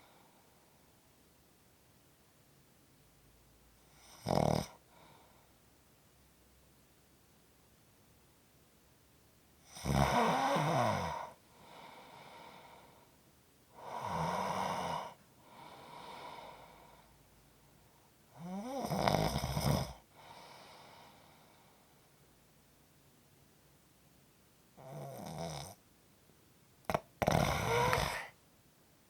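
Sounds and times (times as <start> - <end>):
quiet breath: 0.0 - 1.1, 3.7 - 5.9, 9.6 - 18.8, 19.6 - 22.4, 27.4 - 28.4
person snoring: 9.7 - 12.8, 13.8 - 17.0, 18.4 - 20.8, 26.9 - 28.4.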